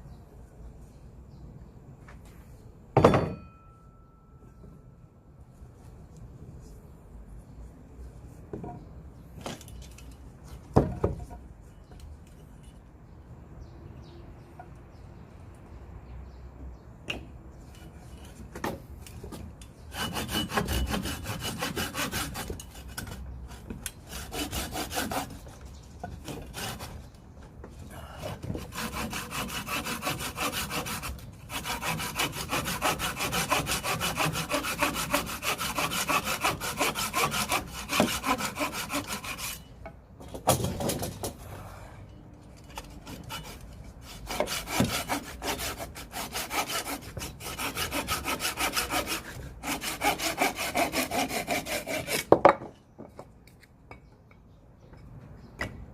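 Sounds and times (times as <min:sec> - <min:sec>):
saw cutting firewood: 0:19.9 - 0:27.2, 0:28.0 - 0:39.6, 0:43.0 - 0:52.4.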